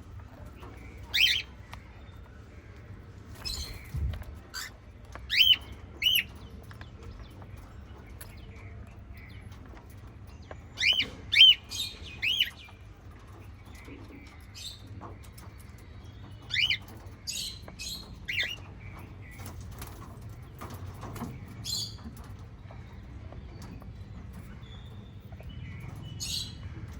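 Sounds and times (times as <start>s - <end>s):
low background hum: 0.0s - 26.9s
parrots chirping: 1.0s - 1.6s, 3.4s - 6.3s, 17.5s - 18.6s.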